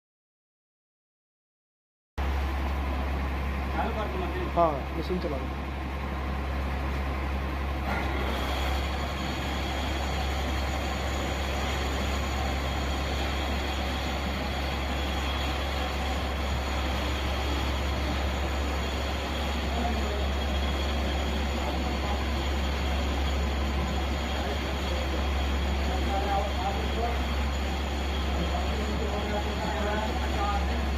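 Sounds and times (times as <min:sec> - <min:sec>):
lathe humming: 0:02.7 - 0:30.9
faint high whine: 0:06.2 - 0:30.9.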